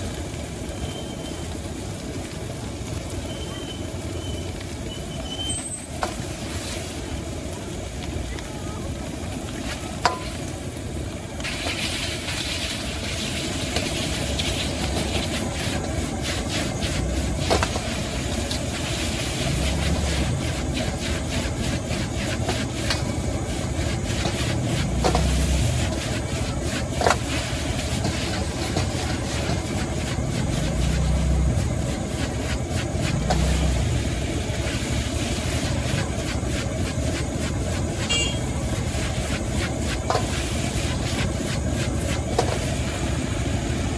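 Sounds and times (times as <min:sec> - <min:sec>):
food frying in a wok: 0:00.0 - 0:43.9
gas burner roaring: 0:00.0 - 0:43.9
metal spatula clanking on wok: 0:10.0 - 0:10.4.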